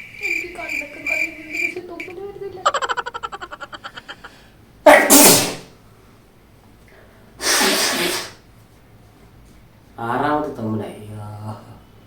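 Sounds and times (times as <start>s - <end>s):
person sneezing: 4.1s - 5.7s, 7.4s - 8.4s.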